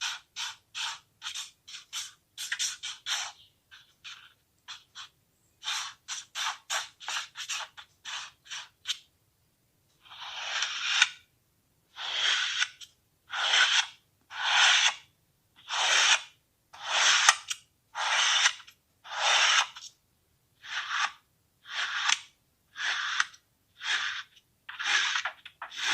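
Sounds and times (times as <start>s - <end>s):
sand being cut scraping: 23.8s - 25.9s.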